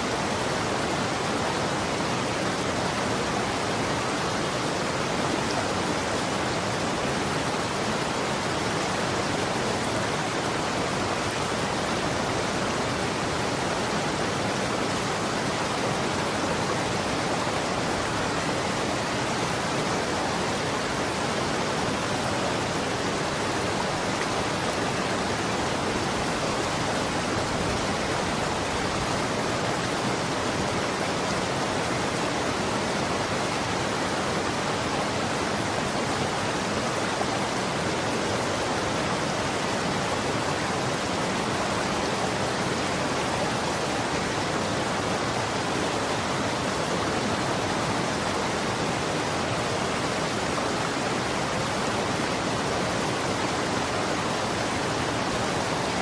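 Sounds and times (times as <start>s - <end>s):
water rushing: 0.0s - 56.0s.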